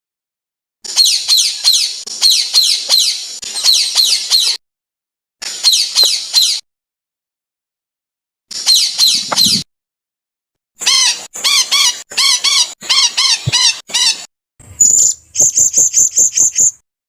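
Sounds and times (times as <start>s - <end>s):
high bird whistle: 0.9s - 4.6s, 5.4s - 6.6s, 8.5s - 9.7s, 10.8s - 16.8s
songbird chirps: 0.9s - 4.6s, 10.9s - 16.8s
rapid ticking bird notes: 10.9s - 16.8s.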